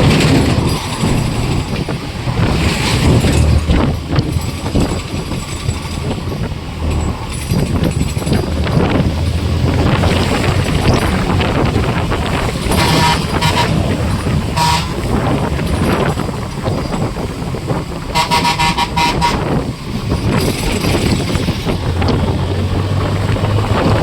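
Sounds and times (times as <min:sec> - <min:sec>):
engine rumble: 0:00.0 - 0:24.0
wind rumble: 0:00.0 - 0:24.0
vehicle horn tooting: 0:12.7 - 0:15.5, 0:18.1 - 0:19.7.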